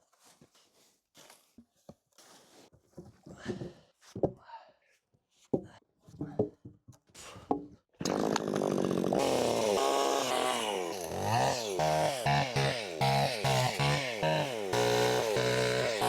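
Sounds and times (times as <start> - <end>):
chainsaw revving: 8.0 - 16.0.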